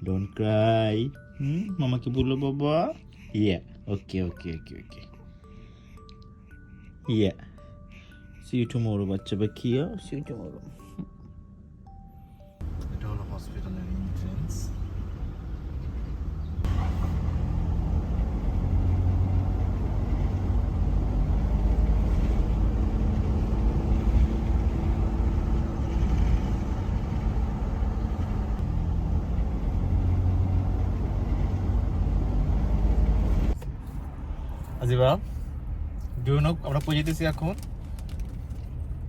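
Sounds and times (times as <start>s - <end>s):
car interior engine and road noise: 11.2s - 39.0s.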